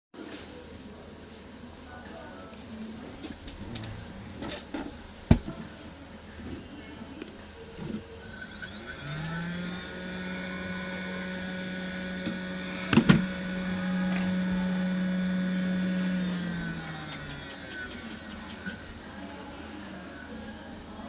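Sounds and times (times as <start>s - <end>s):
electric fan motor: 7.3s - 19.4s.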